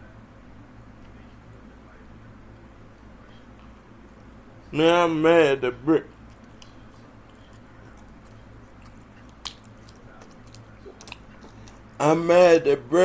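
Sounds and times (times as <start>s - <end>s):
chewing and wet mouth sounds: 6.0s - 12.0s.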